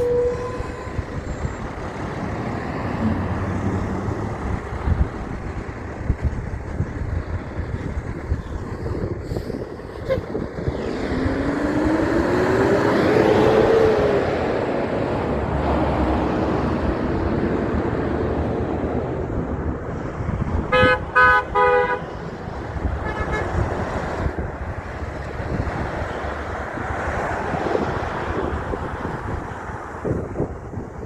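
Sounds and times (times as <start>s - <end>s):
truck horn blasts: 0.0s - 1.6s, 10.0s - 10.7s, 20.6s - 22.1s, 22.9s - 23.8s
heavy truck driving past: 0.0s - 20.7s.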